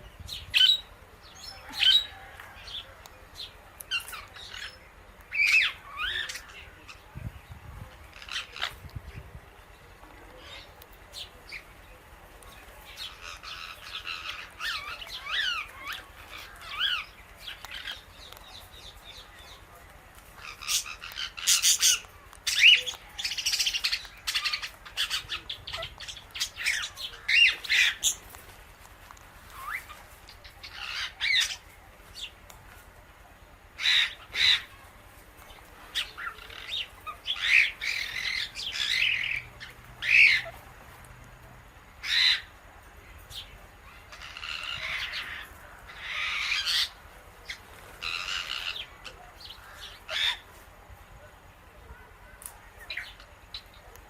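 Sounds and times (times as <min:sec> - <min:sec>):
parrots squawking and chirping: 0:01.5 - 0:02.4, 0:03.9 - 0:07.0, 0:08.1 - 0:08.9, 0:12.9 - 0:18.1, 0:20.4 - 0:28.2, 0:29.5 - 0:31.7, 0:33.8 - 0:34.9, 0:35.9 - 0:40.6, 0:42.0 - 0:42.5, 0:43.9 - 0:50.5.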